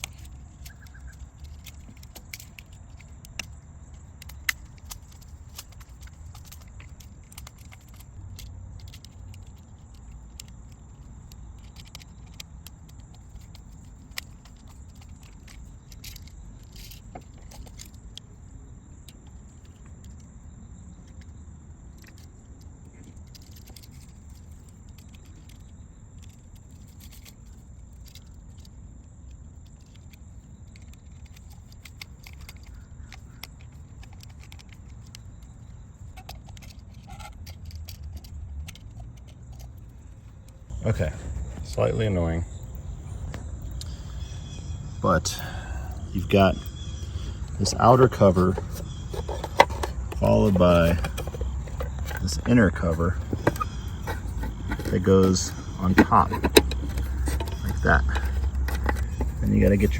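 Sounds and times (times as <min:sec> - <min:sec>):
small clicks and scrapes: 0:00.0 - 0:59.9
steady low rumble: 0:40.6 - 0:59.9
metallic rattles: 0:45.3 - 0:59.9.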